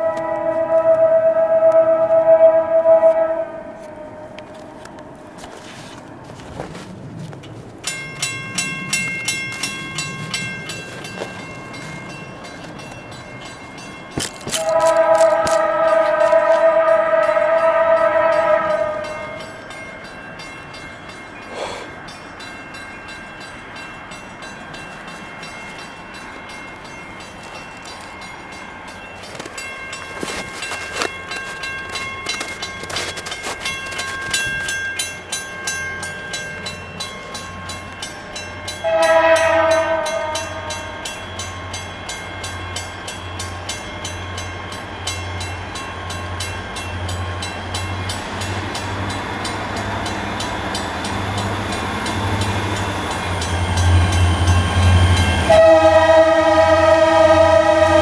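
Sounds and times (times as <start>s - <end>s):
train horn blowing: 0.0s - 4.8s, 14.5s - 19.4s, 38.8s - 41.1s, 53.9s - 58.0s
train rumble and clatter: 0.0s - 58.0s.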